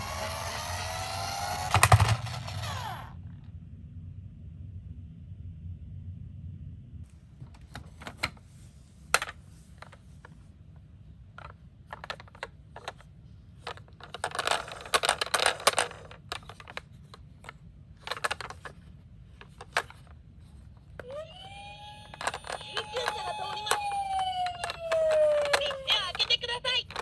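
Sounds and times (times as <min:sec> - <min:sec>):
toy cars clicking and clinking: 0:00.0 - 0:03.1, 0:11.4 - 0:13.0, 0:13.6 - 0:18.8, 0:19.4 - 0:20.1, 0:21.0 - 0:27.0.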